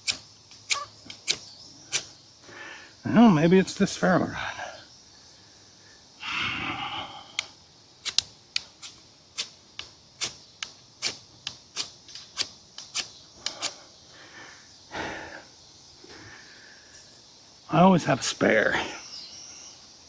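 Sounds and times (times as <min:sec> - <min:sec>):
knife spine scraping ferrocerium rod: 0:11.8 - 0:13.8.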